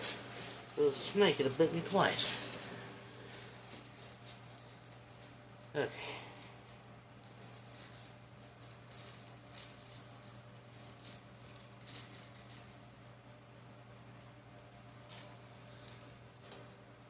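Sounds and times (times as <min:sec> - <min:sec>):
packaging rustling and rattling: 0:00.0 - 0:05.7.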